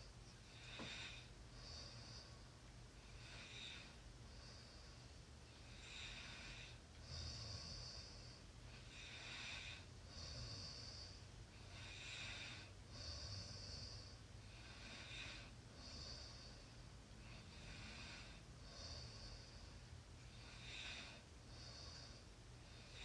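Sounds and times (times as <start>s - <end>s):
person snoring softly: 0.0s - 2.4s, 3.0s - 23.0s.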